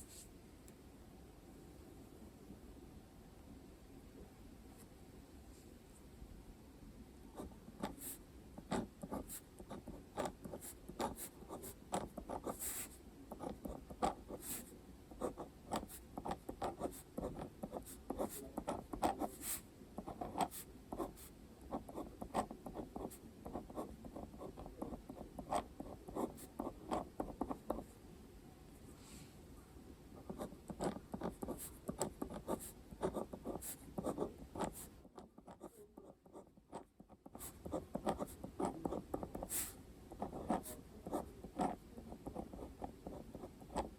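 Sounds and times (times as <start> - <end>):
pen scratching on paper: 7.4 - 27.9, 30.2 - 43.9.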